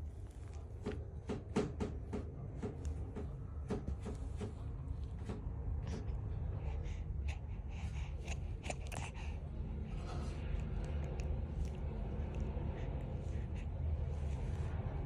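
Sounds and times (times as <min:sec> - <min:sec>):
baby snuffling breaths: 0:04.1 - 0:15.0.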